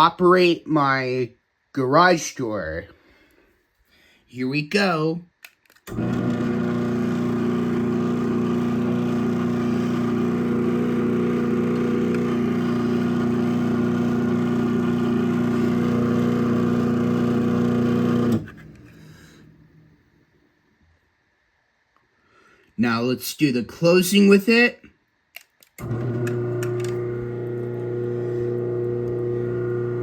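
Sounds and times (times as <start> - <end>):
garage door opener motor humming: 5.9 - 18.9, 25.8 - 30.0.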